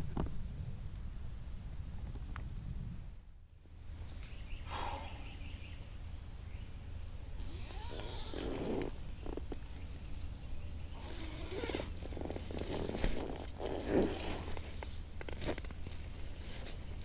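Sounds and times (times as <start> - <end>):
rustling of fabric and bedding: 11.4 - 17.0.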